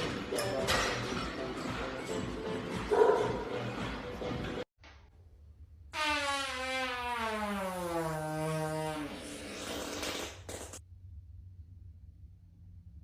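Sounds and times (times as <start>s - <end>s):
long tonal fart: 6.0s - 10.6s.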